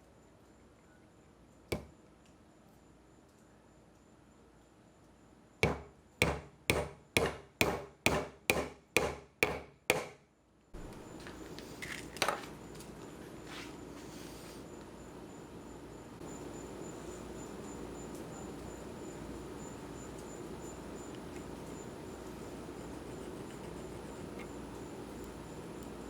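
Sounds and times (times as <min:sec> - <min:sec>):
hammer striking wood: 0:01.7 - 0:01.9, 0:05.6 - 0:10.2
insects chirring: 0:15.0 - 0:26.0.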